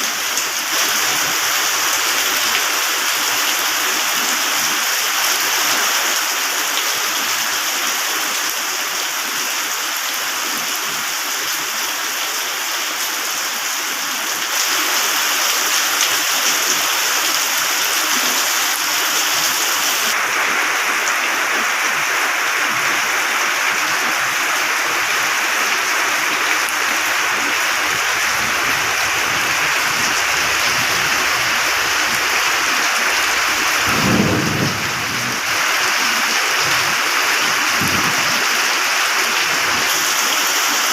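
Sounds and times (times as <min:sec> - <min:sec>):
heavy rain: 0:00.0 - 0:40.9
low thunder rumbling: 0:27.9 - 0:35.6.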